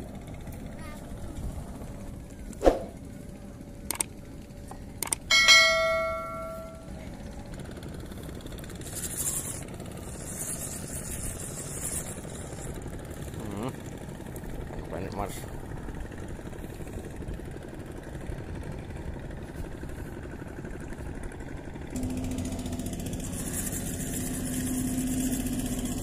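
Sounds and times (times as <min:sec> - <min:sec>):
sharp clicks: 0:03.8 - 0:04.2, 0:05.0 - 0:05.3
metal object clanging: 0:05.3 - 0:06.9.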